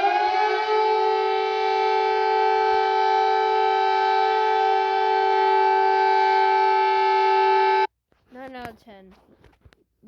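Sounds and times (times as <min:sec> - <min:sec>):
two-tone emergency alert siren: 0:00.0 - 0:07.9.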